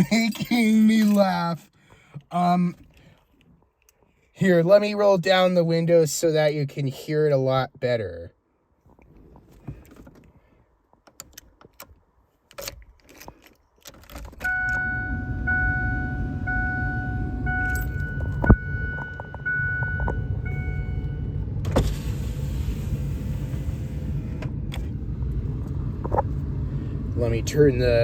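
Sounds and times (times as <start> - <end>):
keys jangling and clicking: 0.0 - 1.2, 17.6 - 18.5
vehicle engine rumble: 8.8 - 28.0
warning chime: 14.4 - 21.4.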